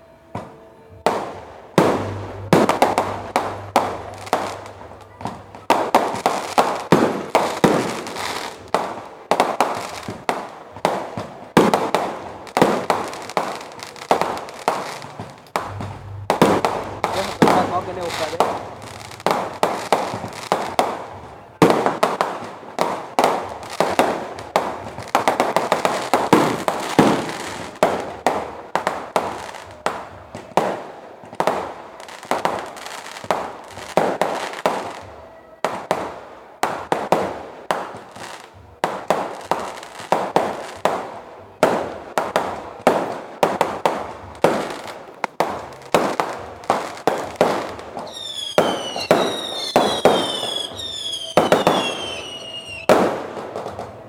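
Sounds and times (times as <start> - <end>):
firework bangs: 0.0 - 54.0
whistling fireworks: 0.0 - 54.0.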